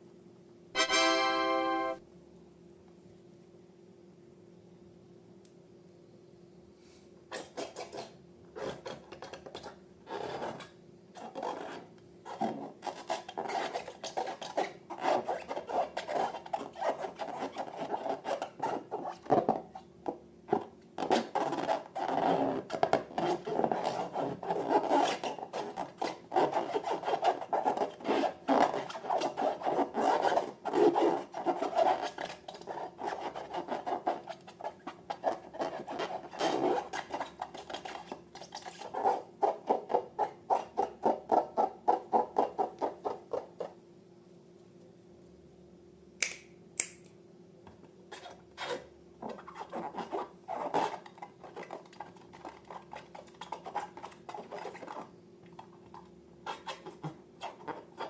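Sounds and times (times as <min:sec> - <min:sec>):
sticky slime crackling clicks: 0:46.2 - 0:47.1.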